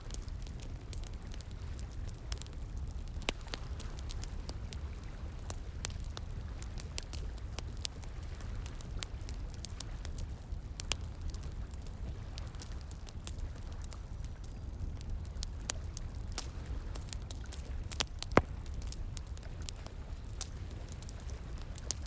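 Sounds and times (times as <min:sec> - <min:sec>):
wood fire crackling and popping: 0:05.4 - 0:22.0.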